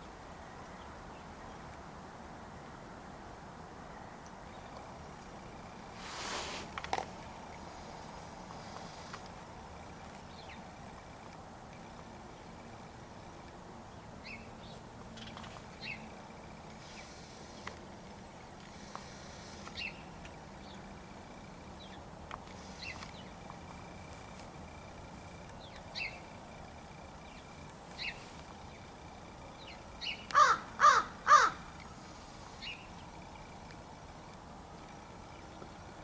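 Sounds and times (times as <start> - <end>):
faint short bird calls: 30.0 - 31.6
crow cawing loudly: 30.3 - 31.6.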